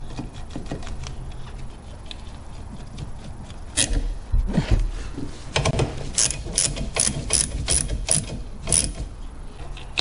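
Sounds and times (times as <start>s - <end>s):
ratchet wrench clicking: 6.2s - 9.0s.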